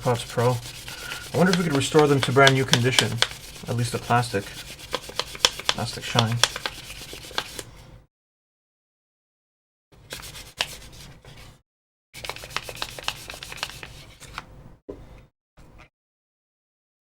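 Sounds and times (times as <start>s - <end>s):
sandpaper rubbing on plastic: 0.0s - 7.7s, 12.2s - 14.3s.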